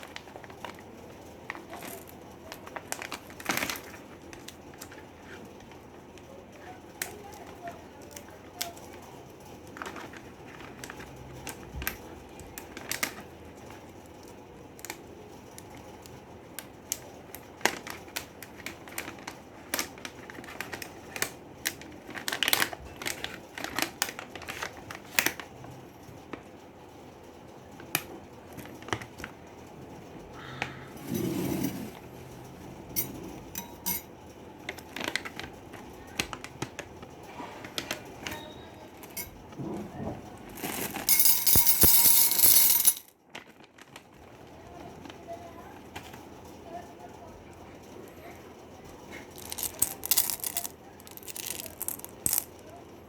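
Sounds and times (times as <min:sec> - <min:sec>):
candies clicking and clinking: 0:40.6 - 0:43.1, 0:49.3 - 0:52.6.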